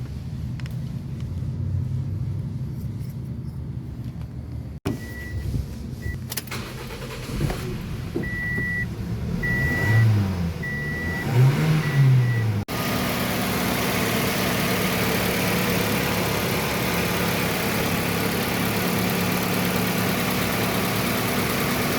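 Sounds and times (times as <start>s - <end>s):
car engine revving and idling: 6.0s - 21.9s.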